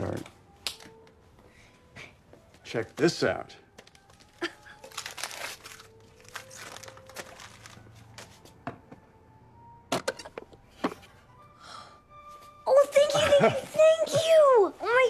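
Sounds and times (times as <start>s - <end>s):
wrapping paper tearing and crumpling: 3.8s - 8.4s.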